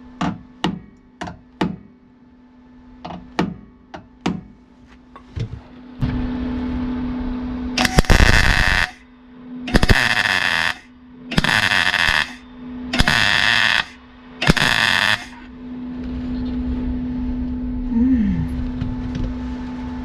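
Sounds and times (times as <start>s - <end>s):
steady low hum: 0.0s - 20.0s
welder crackling bursts: 7.8s - 9.0s, 9.7s - 15.5s.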